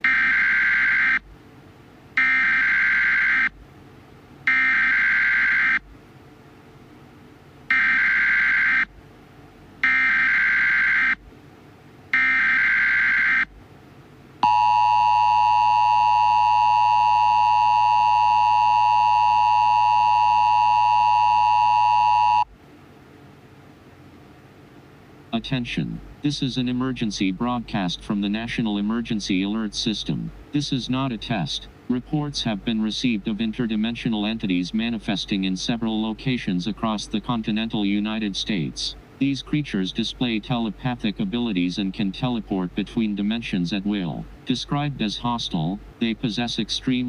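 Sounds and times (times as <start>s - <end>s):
short data tone bursts: 14.4s - 22.5s
two-tone attention signal: 14.4s - 22.5s.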